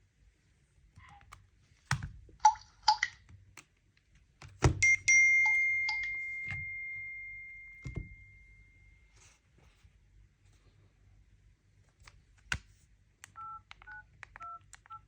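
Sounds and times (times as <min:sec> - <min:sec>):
clear high ringing tone: 0:04.8 - 0:09.1.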